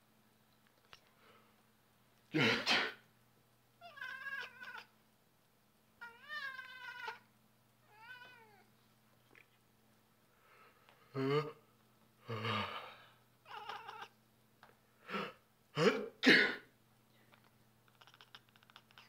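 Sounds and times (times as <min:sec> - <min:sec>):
person sneezing loudly: 0:02.3 - 0:03.0, 0:15.1 - 0:16.7
cat meowing: 0:03.8 - 0:04.9, 0:06.0 - 0:07.2, 0:07.9 - 0:08.7, 0:13.5 - 0:14.2, 0:17.9 - 0:19.0.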